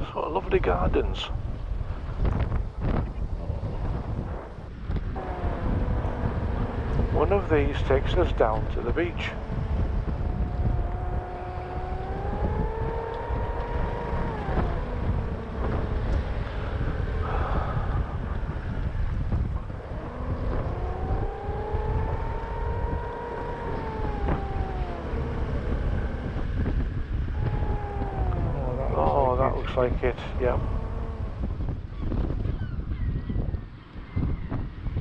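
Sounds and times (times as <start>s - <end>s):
car road and engine rumble: 0.0s - 32.6s
whining engine note: 2.5s - 31.8s.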